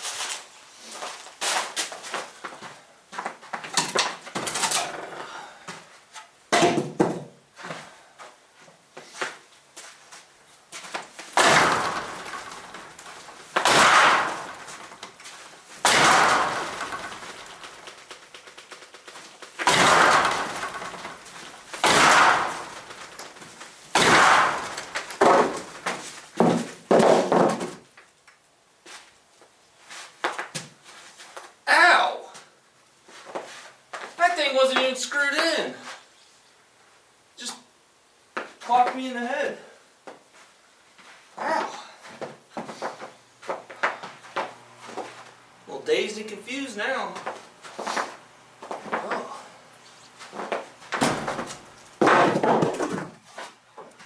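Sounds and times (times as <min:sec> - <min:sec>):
wooden boards knocked off a wall: 0:03.7 - 0:05.4, 0:06.5 - 0:07.4, 0:11.2 - 0:27.9, 0:50.2 - 0:53.5
heavy banging blows with ring: 0:11.4 - 0:15.0, 0:19.6 - 0:25.8.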